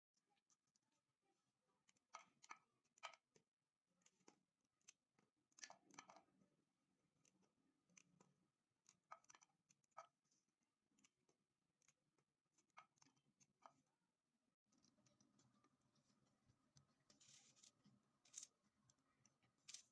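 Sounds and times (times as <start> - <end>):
soft crunching: 14.8 - 19.9
crisp snaps and clicks: 19.6 - 19.9.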